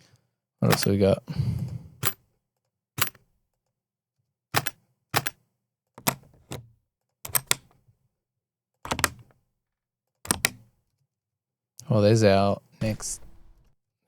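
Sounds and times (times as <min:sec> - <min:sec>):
computer mouse clicking: 0:07.3 - 0:07.7, 0:08.9 - 0:09.3, 0:10.3 - 0:10.6.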